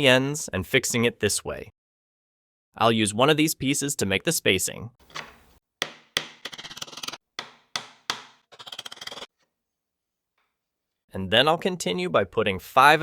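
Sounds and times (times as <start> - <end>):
hammer driving nails into wood: 5.0 - 9.3.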